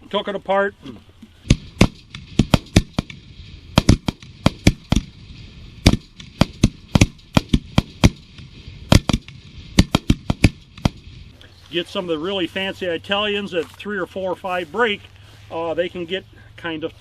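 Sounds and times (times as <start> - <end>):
sharp cracking pops: 1.3 - 11.7.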